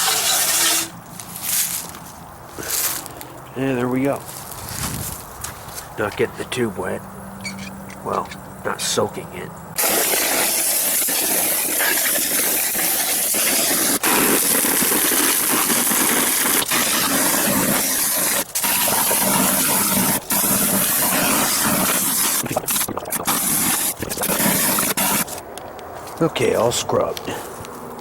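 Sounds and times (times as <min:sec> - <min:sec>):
garden hose spraying water: 0:00.0 - 0:01.9, 0:09.8 - 0:25.4.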